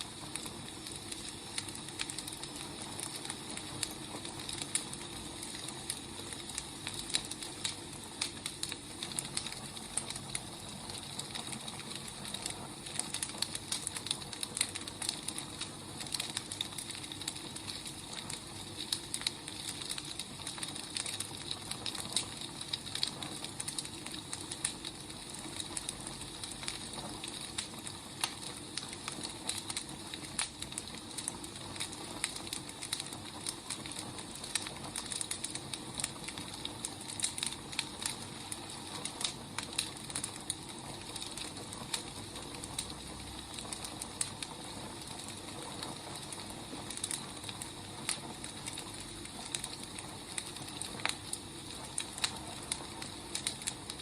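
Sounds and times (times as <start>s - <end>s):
wood fire crackling and popping: 0.0s - 54.0s.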